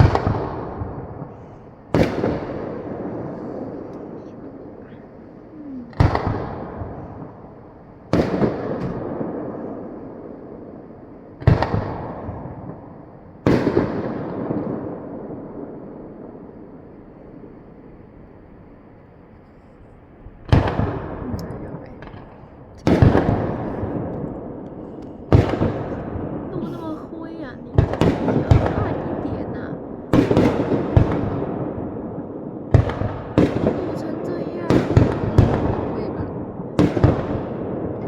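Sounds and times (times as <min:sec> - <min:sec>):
rumbling echo: 0:00.0 - 0:18.6, 0:20.1 - 0:38.0
firework shells bursting: 0:20.5 - 0:38.0.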